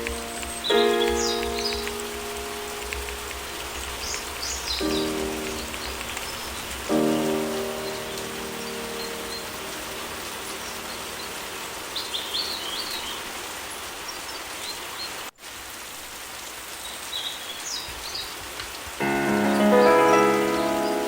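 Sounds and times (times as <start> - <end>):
birds chirping: 0.0 - 15.3
steady rain: 0.0 - 21.0.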